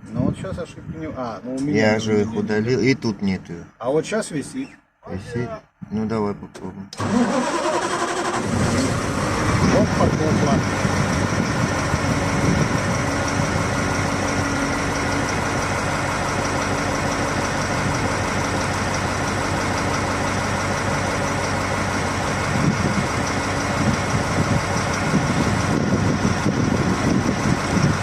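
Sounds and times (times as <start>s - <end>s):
diesel truck engine idling: 7.0s - 28.0s
engine knocking and jerking: 7.0s - 28.0s.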